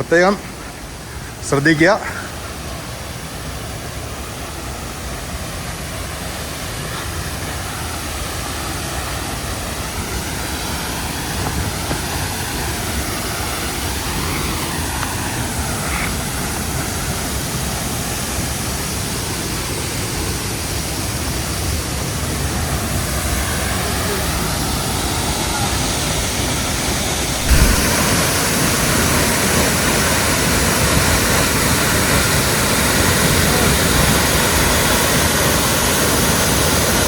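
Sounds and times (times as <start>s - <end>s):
waterfall roaring: 0.0s - 37.0s
river water flowing: 0.2s - 29.0s.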